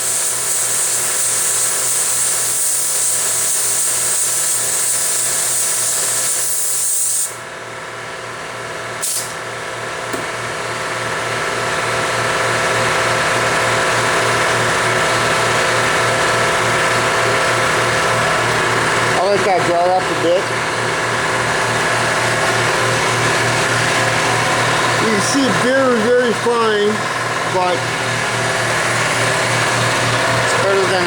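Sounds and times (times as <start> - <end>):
air nozzle hissing: 0.0 - 7.4, 9.0 - 9.3
air compressor running: 0.0 - 31.0.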